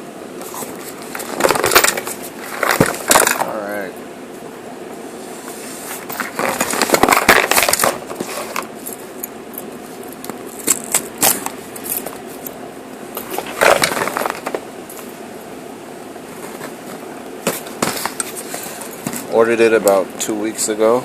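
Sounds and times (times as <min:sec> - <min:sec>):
cardboard box rustling and scraping: 0:05.4 - 0:08.7.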